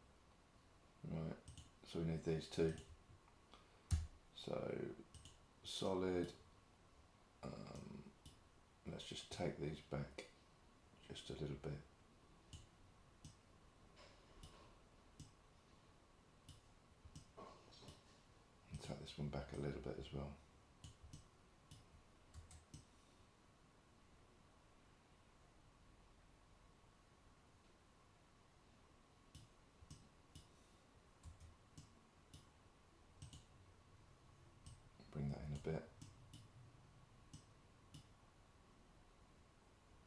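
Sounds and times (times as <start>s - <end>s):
faint room hum: 0.0s - 40.0s
computer mouse clicks: 1.4s - 1.7s, 2.7s - 2.9s, 5.1s - 5.4s, 14.4s - 14.6s, 15.2s - 15.4s, 20.8s - 22.9s, 31.2s - 32.5s, 33.2s - 33.5s, 34.6s - 34.8s, 37.3s - 38.1s.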